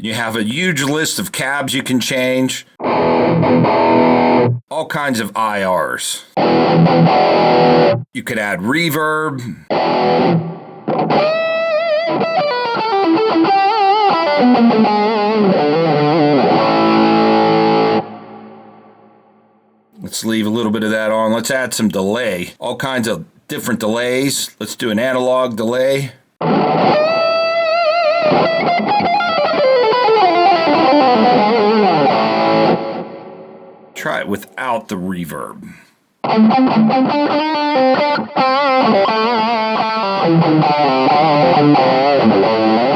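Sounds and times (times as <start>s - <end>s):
distorted electric guitar lead: 2.8s - 4.6s, 6.4s - 8.0s, 9.7s - 19.4s, 26.4s - 34.0s, 36.2s - 42.9s.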